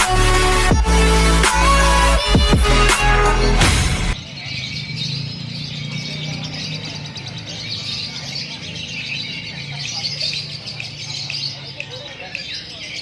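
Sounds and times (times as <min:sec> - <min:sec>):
lovebird chirping and trilling: 0:04.1 - 0:13.0.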